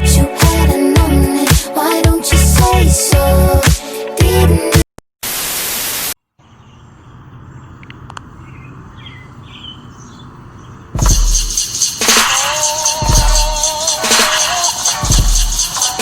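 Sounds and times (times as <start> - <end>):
music: 0.0 - 4.8, 11.0 - 16.0
static hiss: 5.2 - 6.2
faint bird chirps: 6.4 - 11.0.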